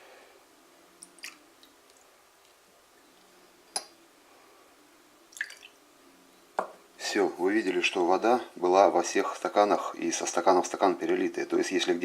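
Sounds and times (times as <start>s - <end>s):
faint dripping: 1.0s - 4.0s, 5.3s - 5.8s.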